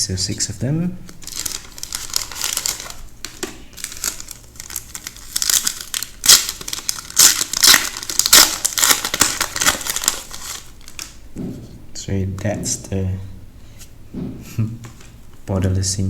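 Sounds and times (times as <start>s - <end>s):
card wrapper crinkling and tearing: 1.0s - 11.2s.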